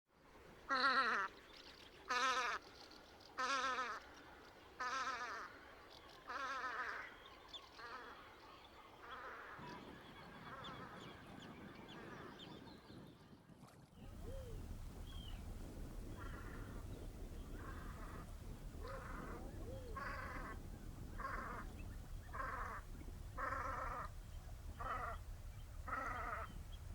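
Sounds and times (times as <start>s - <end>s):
ducks calling: 14.0s - 26.9s
steady low rumble: 14.0s - 26.9s.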